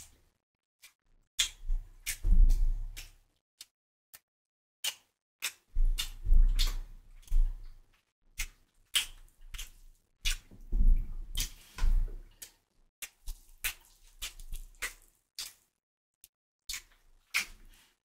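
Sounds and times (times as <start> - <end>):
wet mouth clicks and lip smacks: 1.4 - 2.2, 4.8 - 7.3, 8.4 - 10.5, 12.4 - 15.6, 16.7 - 17.6.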